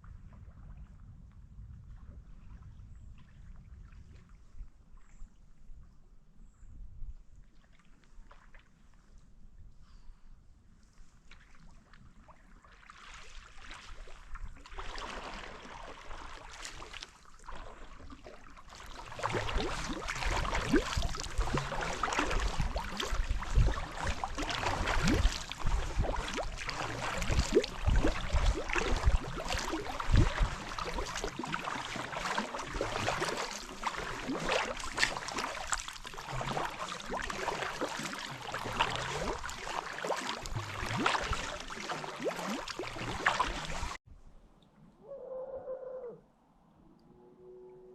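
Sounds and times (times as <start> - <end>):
water dripping and splashing: 11.3 - 44.0
kayak paddle strokes: 12.6 - 44.0.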